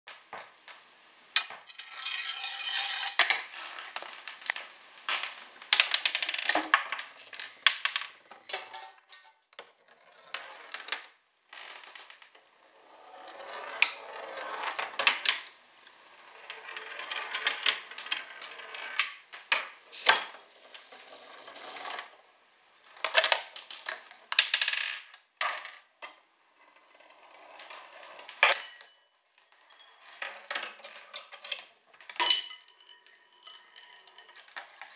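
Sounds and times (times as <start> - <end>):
small objects rolling and clattering: 1.4 - 15.5, 22.9 - 34.9
sharp knocks and clinks: 28.4 - 29.0, 32.1 - 34.4.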